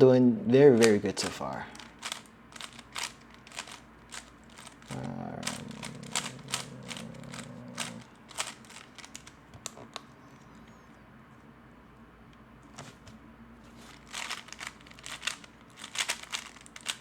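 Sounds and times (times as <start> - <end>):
low steady hum: 0.0 - 17.0
puzzle cube layers clicking: 14.1 - 17.0.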